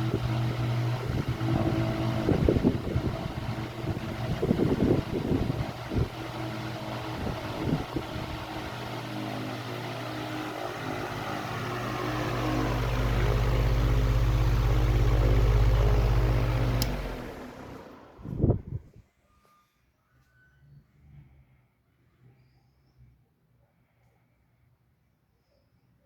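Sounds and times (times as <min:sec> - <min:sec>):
fan motor hum and air rush: 0:00.0 - 0:19.0.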